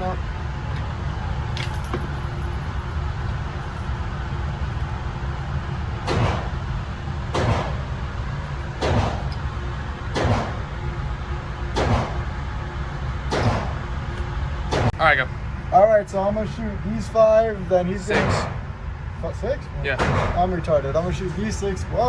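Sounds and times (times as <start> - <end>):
steady low rumble: 0.0 - 22.0
gunshots: 6.0 - 6.6, 7.3 - 7.9, 8.8 - 9.3, 10.1 - 10.6, 11.8 - 12.2, 13.3 - 13.8, 18.1 - 18.6, 20.0 - 20.4.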